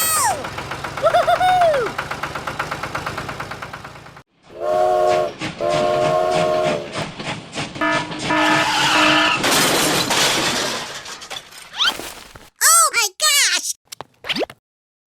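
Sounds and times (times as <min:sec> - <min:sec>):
horn blasts: 0:04.5 - 0:06.9, 0:07.8 - 0:09.4.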